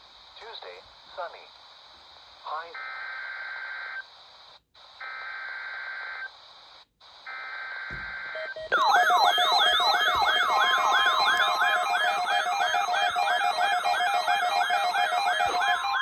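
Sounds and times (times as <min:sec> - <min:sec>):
warbling electronic alert alarm: 0:08.4 - 0:16.0.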